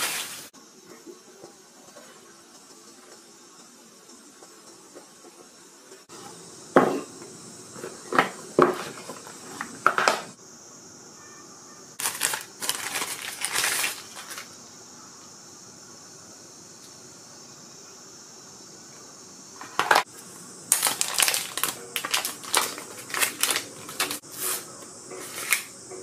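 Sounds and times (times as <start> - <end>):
packaging crinkling: 12.0 - 14.5, 20.7 - 24.2.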